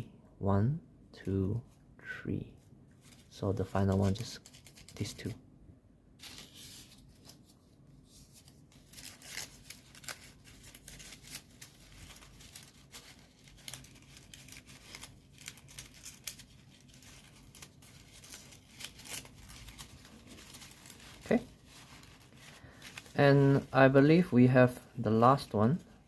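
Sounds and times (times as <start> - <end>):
soft paper rustles: 2.5 - 5.4, 6.2 - 26.0
small crisp paper clicks: 3.0 - 5.3, 8.3 - 23.2.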